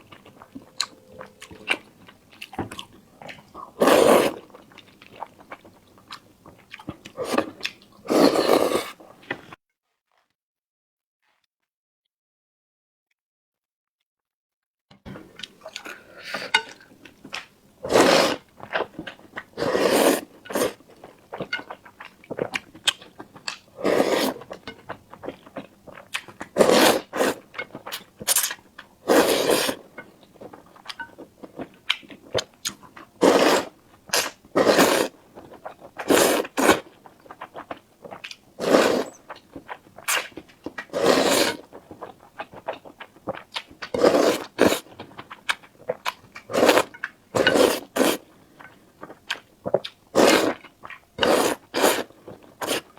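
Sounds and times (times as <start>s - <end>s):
noisy bites and slurps: 0.0s - 9.4s, 15.1s - 52.9s
person chewing: 0.0s - 9.5s, 15.1s - 52.9s.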